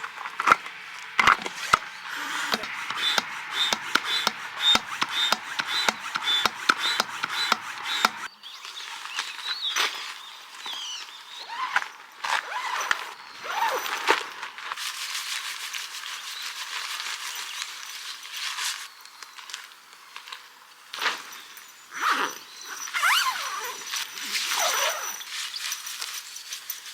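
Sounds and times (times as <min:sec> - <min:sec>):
tent gear rustling and knocking: 0:00.4 - 0:08.3, 0:12.3 - 0:15.0, 0:21.0 - 0:26.9
hammer striking tent pegs: 0:01.3 - 0:08.3.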